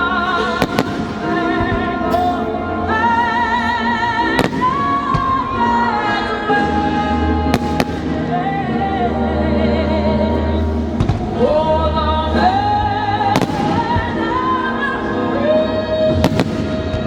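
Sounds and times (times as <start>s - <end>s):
firework bangs: 0.0s - 5.9s, 6.6s - 8.5s, 10.6s - 14.8s, 16.1s - 17.0s
person singing with vibrato: 0.0s - 17.0s.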